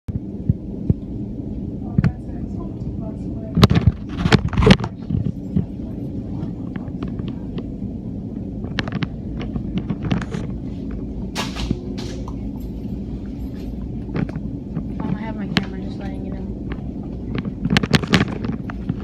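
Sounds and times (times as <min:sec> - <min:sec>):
train rumble: 0:00.1 - 0:19.0.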